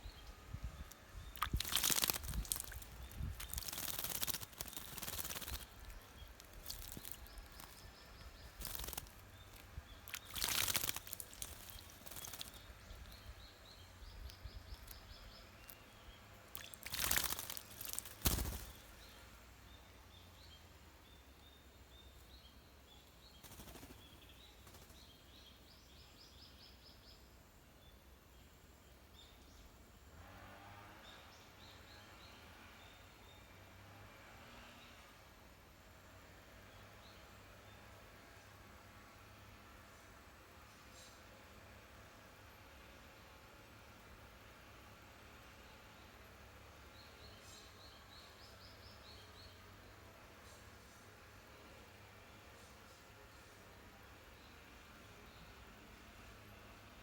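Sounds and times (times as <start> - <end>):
small birds chirping: 0.0 - 29.9, 36.2 - 57.0
bird splashing in water: 0.9 - 13.2, 16.4 - 19.1.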